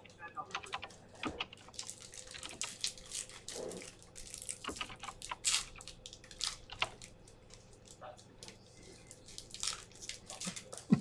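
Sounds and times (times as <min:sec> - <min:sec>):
plastic wrapper crinkling and tearing: 0:01.7 - 0:08.0, 0:09.0 - 0:10.9.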